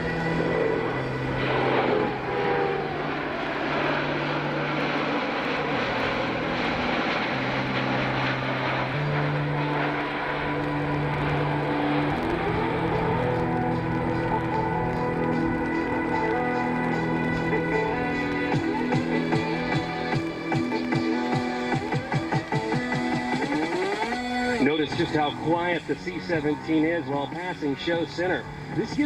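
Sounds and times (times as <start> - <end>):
jet aircraft flying by: 0.0 - 29.0
music over loudspeakers: 9.0 - 29.0.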